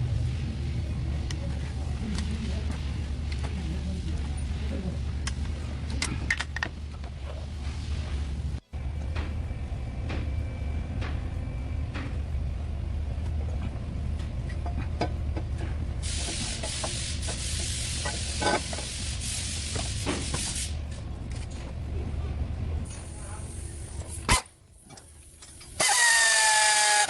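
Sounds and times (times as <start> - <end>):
loud hiss: 16.0 - 20.8.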